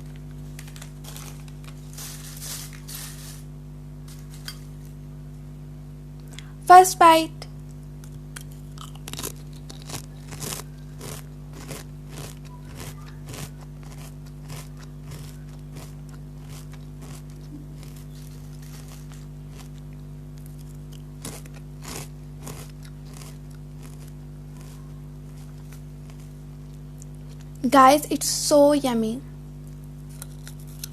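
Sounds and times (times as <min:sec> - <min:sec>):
potato chips crunching: 0:00.0 - 0:03.5, 0:08.0 - 0:27.6, 0:29.6 - 0:30.9.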